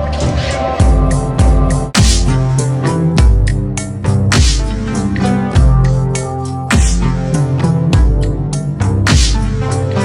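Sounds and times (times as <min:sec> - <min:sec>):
music with heavy bass beat: 0:00.0 - 0:10.0.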